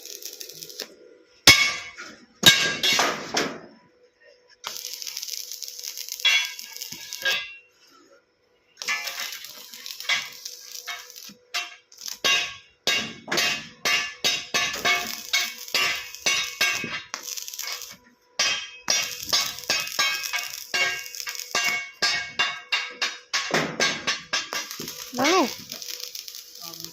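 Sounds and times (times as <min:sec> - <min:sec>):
welding arc crackling and hissing: 0:00.0 - 0:03.3, 0:04.6 - 0:08.1, 0:08.8 - 0:26.9
metallic clinks and clangs: 0:06.0 - 0:07.7, 0:08.8 - 0:26.9.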